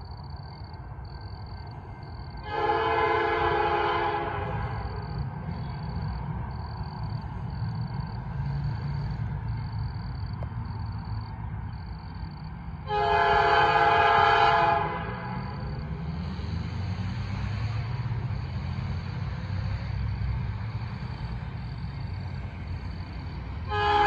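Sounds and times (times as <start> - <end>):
diesel locomotive engine rumbling: 0.0 - 24.0
locomotive air horn blast: 2.4 - 5.1, 12.9 - 15.6, 23.7 - 24.0.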